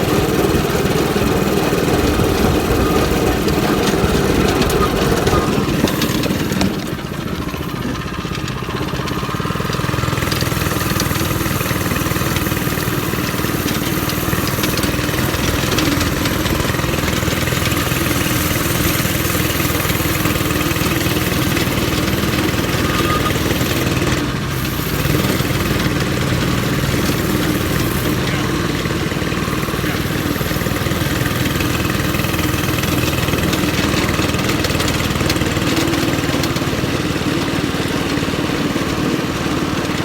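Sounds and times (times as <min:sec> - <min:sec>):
go-kart engine running: 0:00.0 - 0:40.0.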